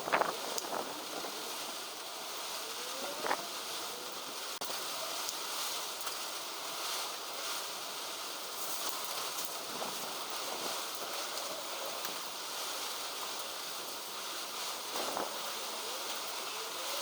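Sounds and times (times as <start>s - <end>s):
wind noise on microphone: 0.0s - 4.6s, 9.4s - 11.9s, 14.5s - 17.0s.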